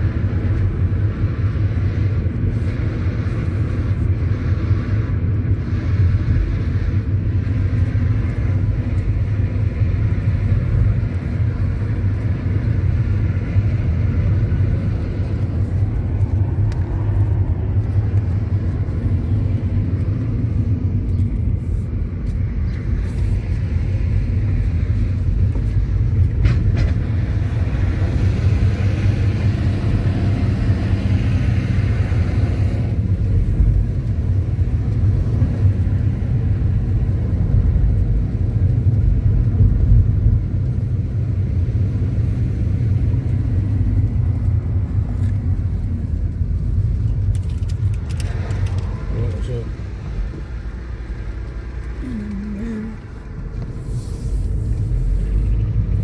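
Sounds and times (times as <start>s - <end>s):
car engine and road rumble: 0.0s - 56.0s
hiss: 53.8s - 54.8s.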